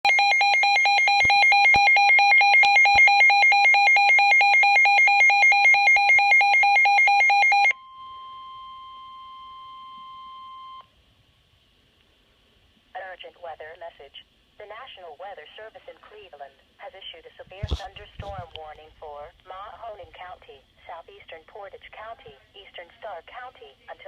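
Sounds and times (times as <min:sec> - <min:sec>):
warbling electronic alarm: 0:00.0 - 0:10.8
steady single alarm tone: 0:00.1 - 0:10.9.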